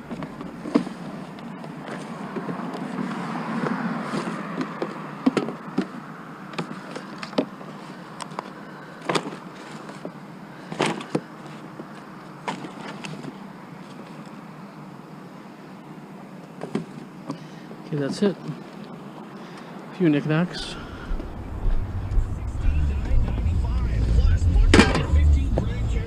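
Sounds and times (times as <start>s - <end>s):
scrap items clattering: 0.0s - 6.0s, 6.6s - 14.2s
steady background hum: 4.1s - 26.0s.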